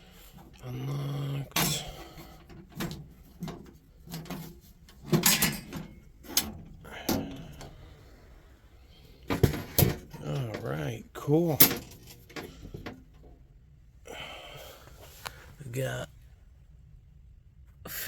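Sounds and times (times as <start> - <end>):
metal case clunks and scrapes: 1.5 - 8.1, 9.1 - 10.6, 11.6 - 13.4.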